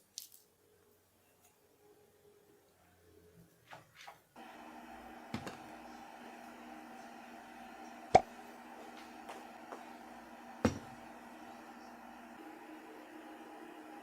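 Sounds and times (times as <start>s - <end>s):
steady machine hum: 4.4s - 14.0s.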